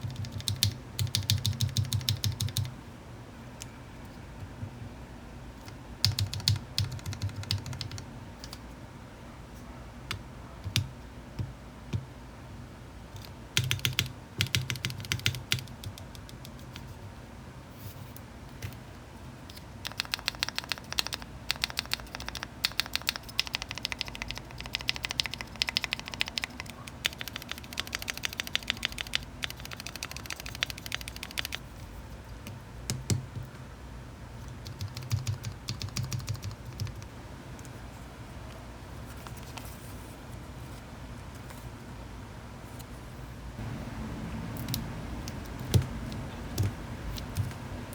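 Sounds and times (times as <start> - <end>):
mechanical keyboard key clacks: 0.0 - 2.7, 6.0 - 8.0, 19.8 - 31.6.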